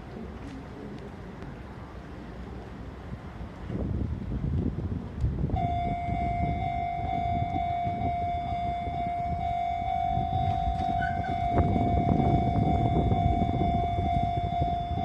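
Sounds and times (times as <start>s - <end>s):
wind rumble on microphone: 0.0s - 15.0s
level crossing alarm ringing: 5.6s - 15.0s.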